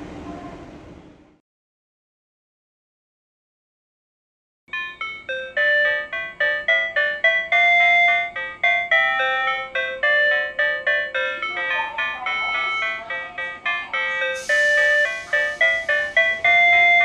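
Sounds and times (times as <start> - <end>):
electronic platform melody: 4.7 - 17.0.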